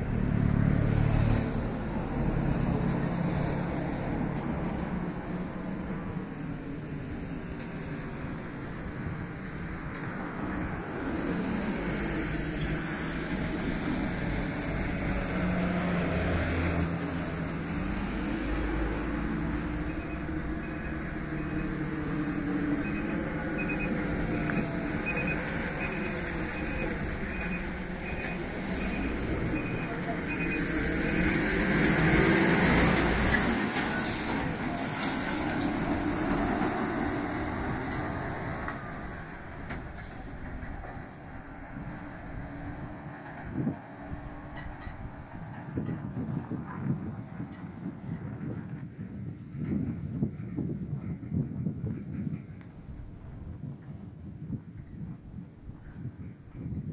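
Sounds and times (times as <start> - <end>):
vehicle engine passing: 11.0 - 47.1
faint beeping: 19.8 - 21.7, 22.8 - 31.4.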